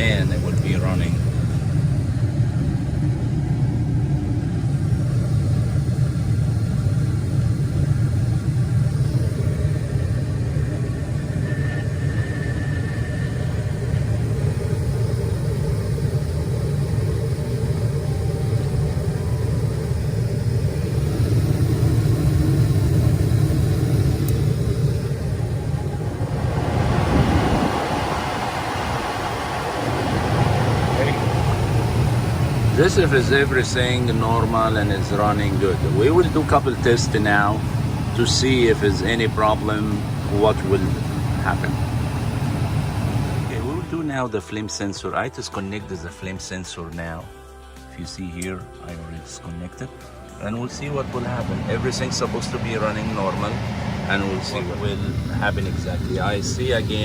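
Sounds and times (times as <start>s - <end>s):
blower fan rushing air: 0.0s - 57.0s
furnace burners rumbling: 0.0s - 57.0s.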